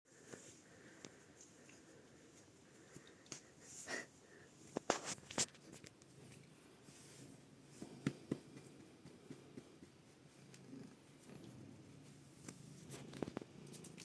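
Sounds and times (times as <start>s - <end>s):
light scratching and rustling: 4.6s - 8.0s, 9.6s - 14.0s.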